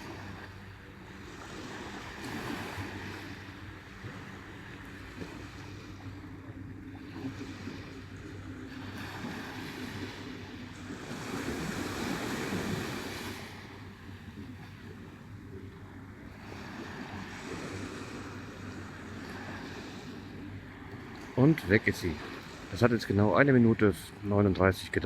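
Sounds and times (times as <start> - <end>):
surf washing onto beach: 7.0 - 15.0, 16.4 - 25.0.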